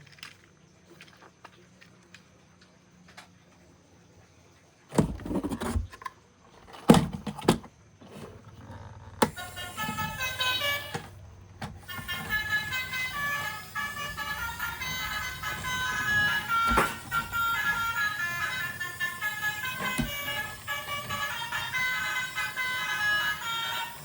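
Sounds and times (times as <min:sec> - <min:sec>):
toy electronic horn tones and tune: 0:09.2 - 0:11.2, 0:11.8 - 0:24.0.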